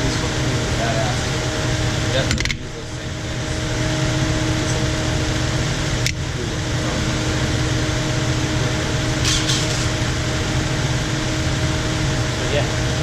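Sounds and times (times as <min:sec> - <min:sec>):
fan whirring and humming: 0:00.0 - 0:13.0
sharp click: 0:02.3 - 0:02.6.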